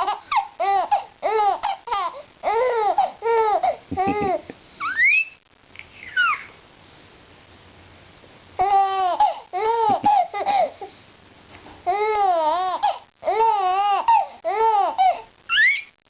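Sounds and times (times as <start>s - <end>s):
baby cooing and babbling: 0.0s - 5.0s, 8.6s - 10.9s, 11.9s - 15.8s.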